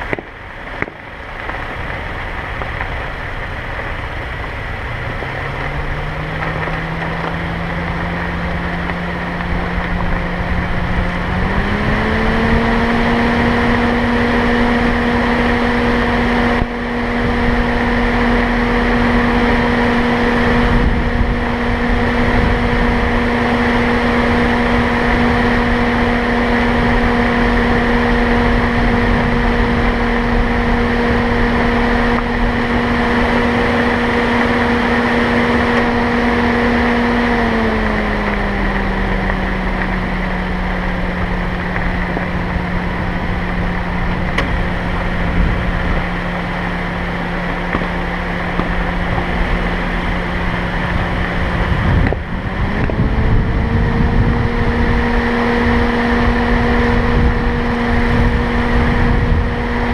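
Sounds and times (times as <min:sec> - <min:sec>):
car engine hum: 0:00.0 - 0:59.9
road noise: 0:00.0 - 0:59.9.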